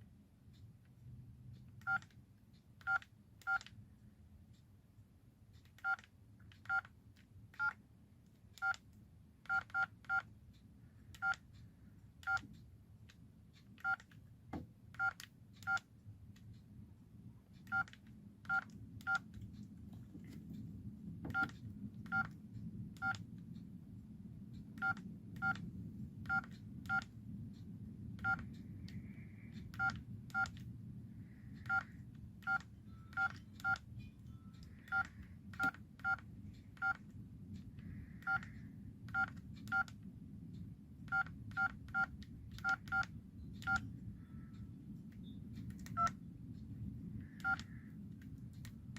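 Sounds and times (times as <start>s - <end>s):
phone keypad beeps: 1.8s - 2.1s, 2.8s - 3.7s, 5.8s - 6.0s, 6.6s - 6.9s, 7.6s - 7.8s, 8.6s - 8.8s, 9.5s - 10.3s, 11.2s - 11.4s, 12.2s - 12.5s, 13.8s - 14.0s, 15.0s - 15.9s, 17.6s - 19.3s, 21.3s - 22.3s, 23.0s - 23.2s, 24.8s - 25.6s, 26.3s - 27.1s, 28.2s - 28.5s, 29.7s - 30.6s, 31.6s - 37.0s, 38.0s - 39.9s, 41.1s - 44.6s, 45.9s - 46.2s, 47.2s - 47.8s.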